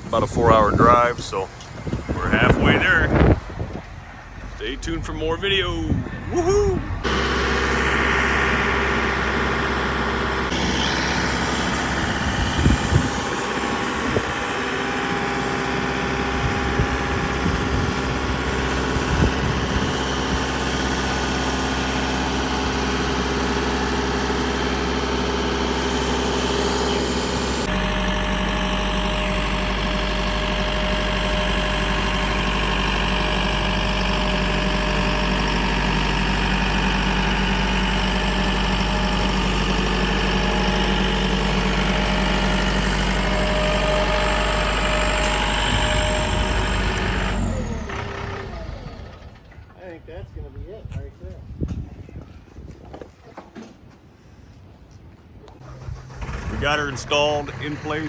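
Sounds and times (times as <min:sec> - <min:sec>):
vehicle engine running: 0:06.2 - 0:49.8, 0:55.6 - 0:58.0.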